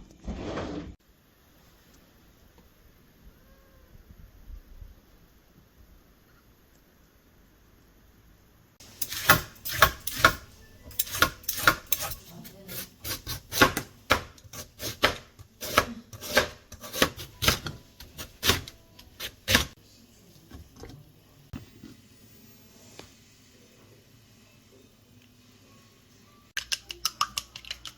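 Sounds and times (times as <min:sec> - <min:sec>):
knife chopping on cutting board: 0:09.0 - 0:19.8.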